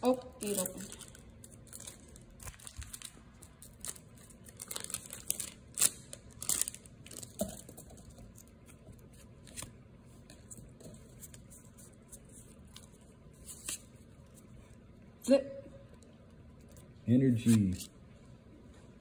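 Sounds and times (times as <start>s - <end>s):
foil wrapper crinkling and tearing: 0.4s - 7.4s.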